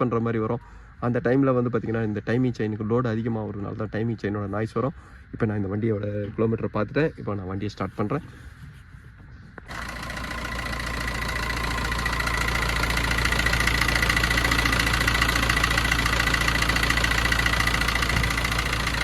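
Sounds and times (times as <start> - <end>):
metallic whirr and rattle: 9.6 - 19.0
car engine starting and idling: 9.7 - 19.0.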